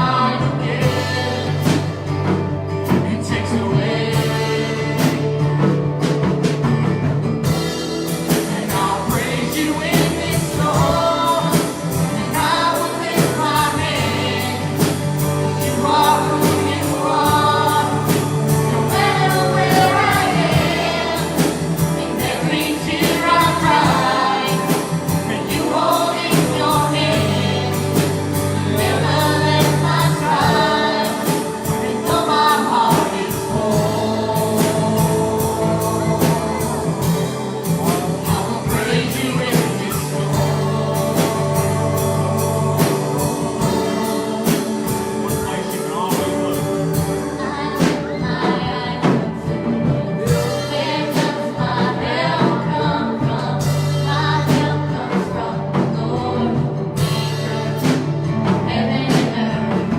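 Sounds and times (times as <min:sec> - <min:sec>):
drum or tambourine beats: 0:00.0 - 0:48.2
gospel singers with band: 0:00.0 - 0:59.9.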